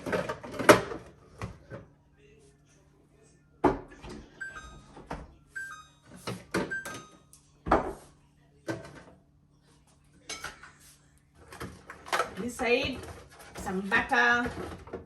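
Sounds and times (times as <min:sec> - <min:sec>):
fridge door alarm beeps: 0:03.9 - 0:07.6.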